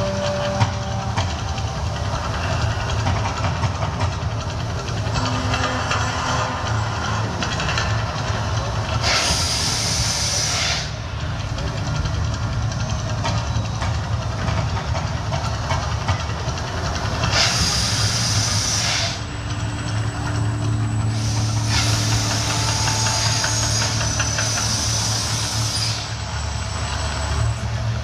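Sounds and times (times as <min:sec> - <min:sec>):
gas flame jets hissing: 0:08.3 - 0:11.4, 0:17.0 - 0:27.7
low hum: 0:17.9 - 0:28.0.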